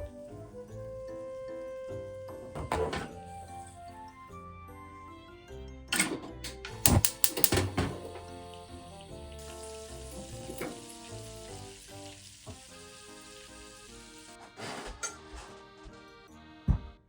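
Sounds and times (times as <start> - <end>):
butter and garlic sizzling in a pan: 6.7 - 14.4.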